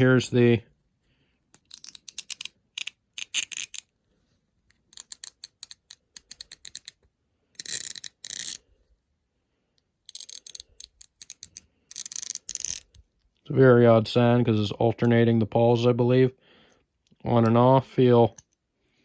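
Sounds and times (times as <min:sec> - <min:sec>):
ratchet clicking: 0:10.1 - 0:12.9.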